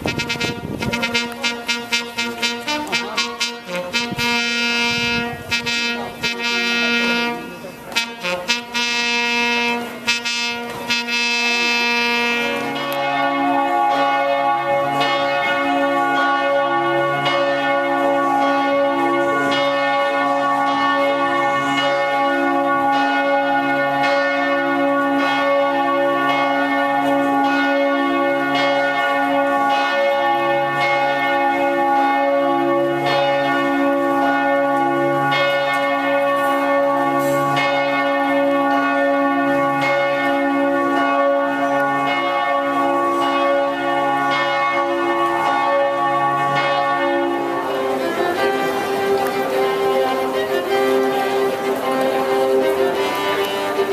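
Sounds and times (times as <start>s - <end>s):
church bells ringing: 0.0s - 53.9s
held musical tone: 47.4s - 53.9s.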